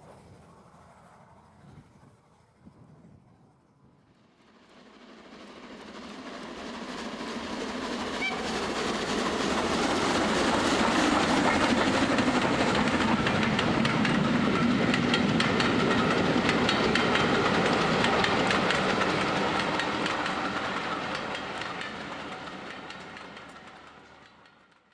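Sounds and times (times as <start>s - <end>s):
train wheels clicking on rails: 4.8s - 24.9s.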